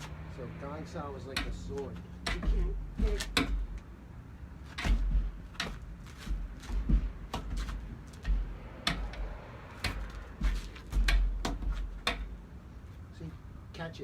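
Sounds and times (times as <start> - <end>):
low thuds: 1.3 - 4.0, 4.6 - 12.4.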